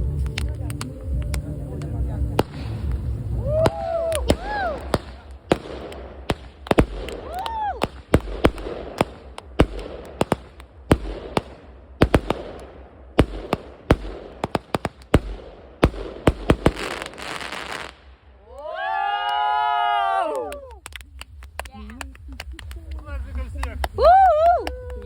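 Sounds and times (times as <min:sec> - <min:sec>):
fireworks whistle: 0:00.0 - 0:09.8
crackling hiss: 0:00.0 - 0:25.0
fireworks bangs and pops: 0:00.0 - 0:25.0.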